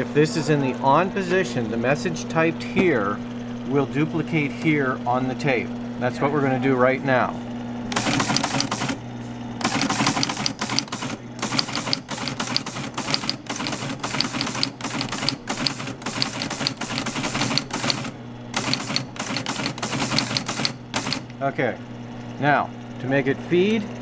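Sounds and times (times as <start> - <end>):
motor humming: 7.8 - 22.2
teletype clattering: 7.9 - 9.0, 9.6 - 21.3.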